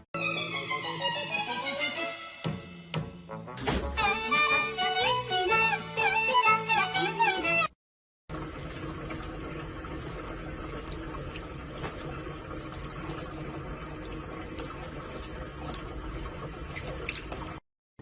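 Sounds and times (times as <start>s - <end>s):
running water: 8.3s - 17.6s.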